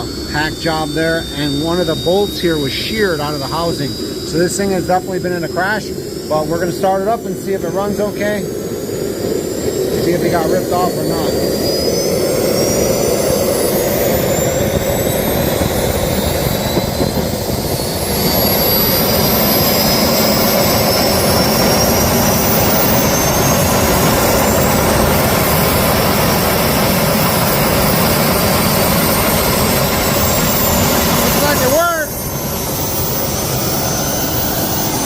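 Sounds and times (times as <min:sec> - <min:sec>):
jet engine whine and roar: 0:00.0 - 0:35.0.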